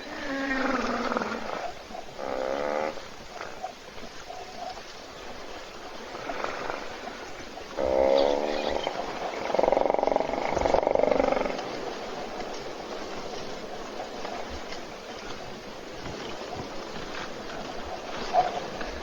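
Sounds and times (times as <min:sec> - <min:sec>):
hippopotamus calling: 0:06.4 - 0:11.9.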